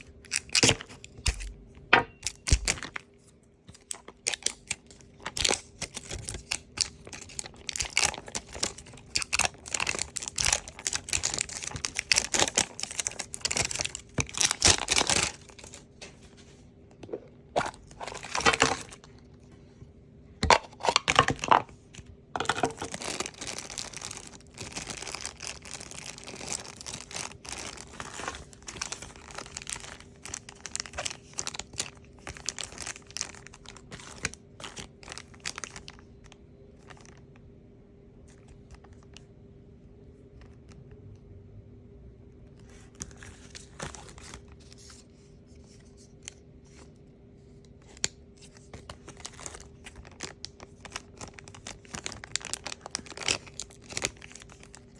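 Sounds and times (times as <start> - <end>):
plastic packaging tearing and crinkling: 0.0 - 16.1, 17.0 - 19.1, 20.4 - 21.8, 22.4 - 37.2, 42.7 - 45.0, 47.9 - 54.9.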